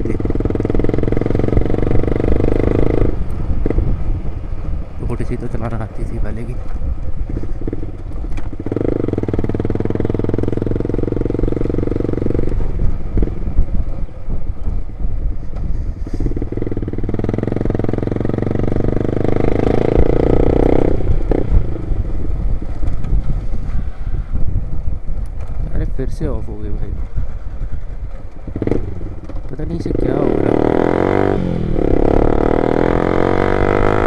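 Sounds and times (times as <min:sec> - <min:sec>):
loud motorcycle engine revving: 0:00.0 - 0:03.9, 0:08.5 - 0:13.4, 0:16.2 - 0:21.8, 0:28.5 - 0:34.0.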